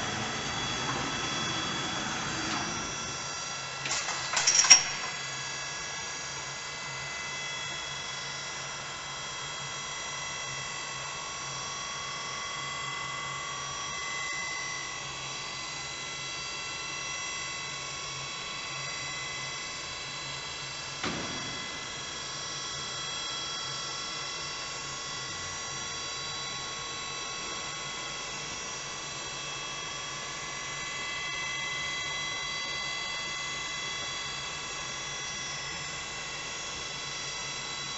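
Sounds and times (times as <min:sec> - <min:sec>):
machining center whine: 0:00.0 - 0:05.3, 0:20.8 - 0:24.3.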